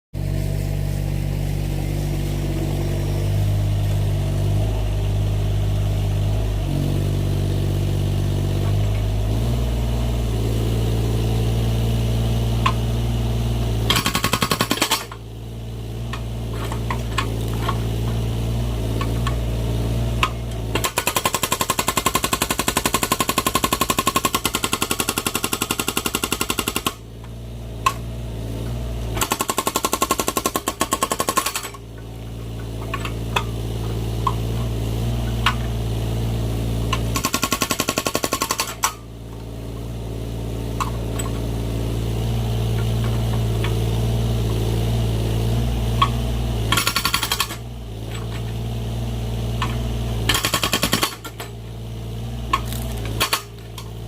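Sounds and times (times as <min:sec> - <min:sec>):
diesel engine running: 0:00.2 - 0:54.0
hydraulic breaker hammering: 0:13.9 - 0:15.2, 0:20.2 - 0:27.0, 0:29.2 - 0:35.9, 0:36.8 - 0:39.0, 0:46.0 - 0:48.5, 0:49.6 - 0:51.6.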